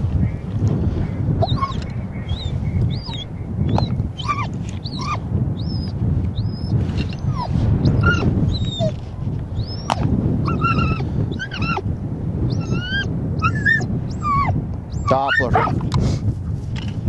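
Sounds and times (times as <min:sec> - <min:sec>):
wind buffeting microphone: 0:00.0 - 0:17.0
high-pitched squeaks and chirps: 0:01.4 - 0:08.9, 0:09.6 - 0:11.8.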